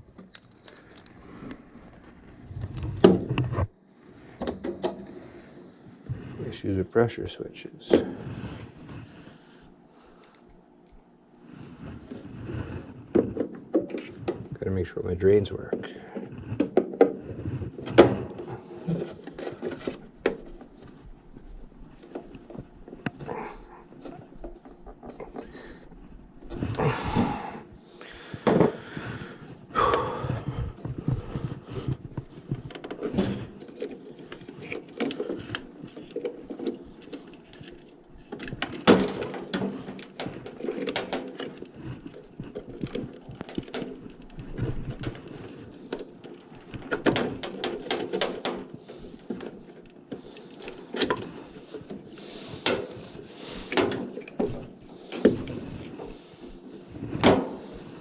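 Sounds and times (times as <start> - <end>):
plastic and metal parts clattering: 15.5 - 27.3, 30.7 - 58.0.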